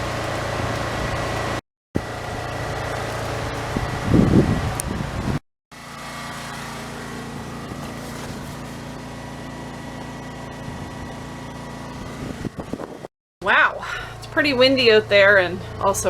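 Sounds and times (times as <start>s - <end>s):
portable generator engine running: 0.0s - 16.0s.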